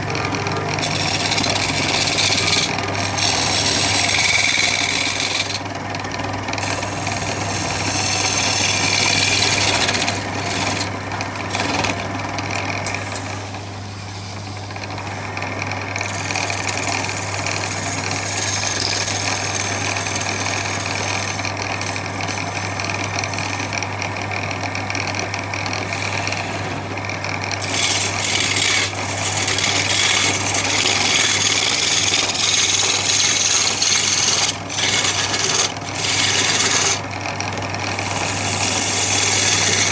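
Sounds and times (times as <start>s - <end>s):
rough abrasive sanding noise: 0.0s - 5.7s, 6.6s - 12.0s, 16.0s - 23.8s, 27.6s - 37.1s, 37.8s - 39.9s
power tool motor humming: 0.0s - 6.0s, 6.6s - 12.0s, 27.6s - 39.9s.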